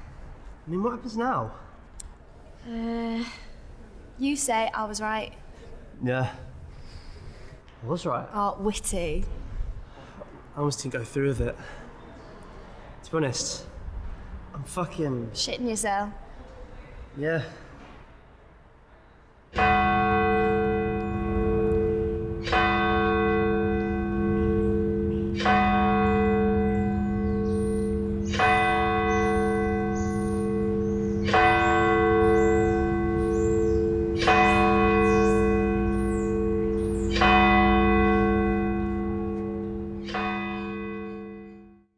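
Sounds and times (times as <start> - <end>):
large bell tolling: 19.6 - 41.9.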